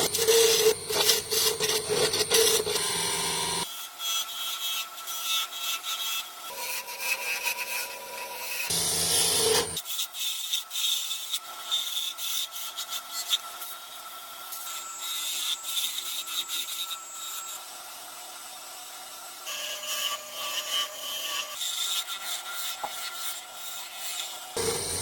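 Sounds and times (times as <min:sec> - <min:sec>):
tool rasping wood: 0:00.0 - 0:08.0, 0:08.6 - 0:10.4, 0:19.6 - 0:25.0.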